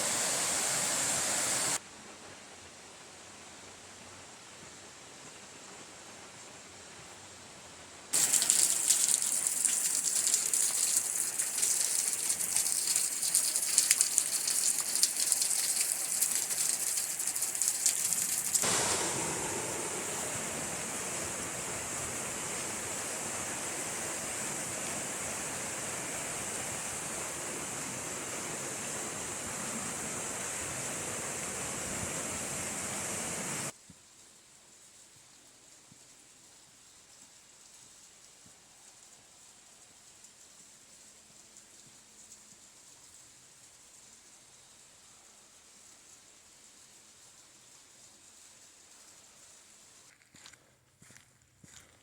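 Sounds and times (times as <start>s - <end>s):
rushing water: 0.0s - 1.8s, 8.2s - 33.8s.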